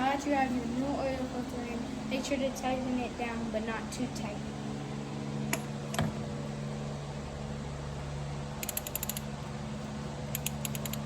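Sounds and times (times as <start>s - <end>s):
ratchet wrench clicking: 8.6s - 9.3s, 10.3s - 11.0s.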